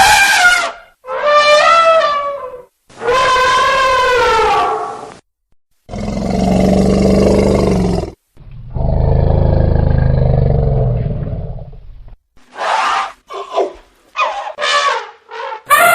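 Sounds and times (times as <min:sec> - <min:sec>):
elephant roaring: 0:05.9 - 0:11.8
elephant high call: 0:12.6 - 0:15.9.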